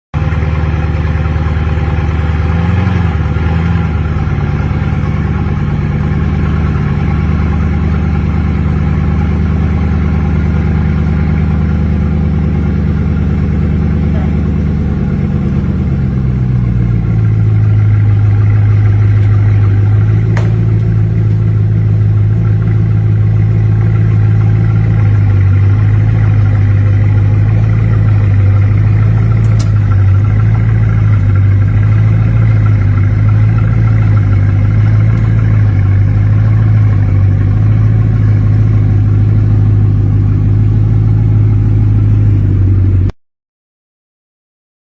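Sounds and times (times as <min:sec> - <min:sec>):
car engine idling: 0:00.2 - 0:43.2.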